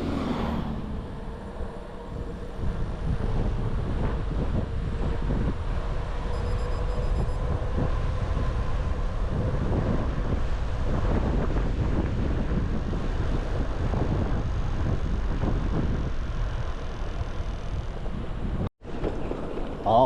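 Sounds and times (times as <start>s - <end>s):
wind rushing over microphone: 0.0s - 20.0s.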